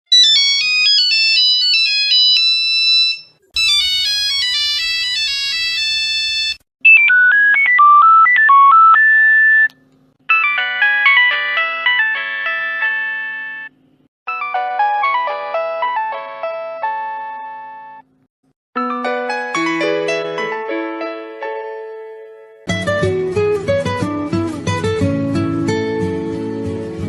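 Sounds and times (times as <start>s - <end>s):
phone ringtones: 0.2s - 9.7s, 10.3s - 13.7s.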